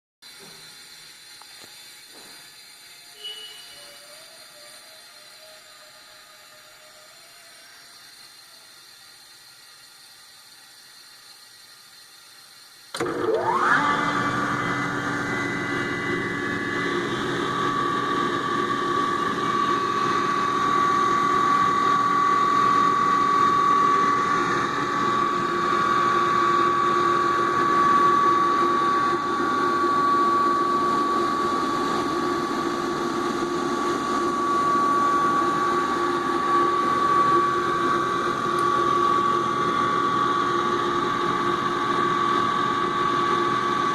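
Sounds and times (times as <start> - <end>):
air compressor whine: 0.2 - 43.9
low hum: 13.0 - 43.9.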